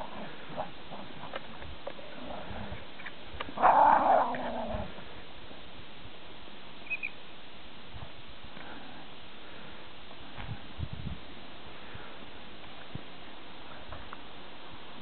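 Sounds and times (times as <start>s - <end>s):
high double chirp: 6.8s - 7.2s.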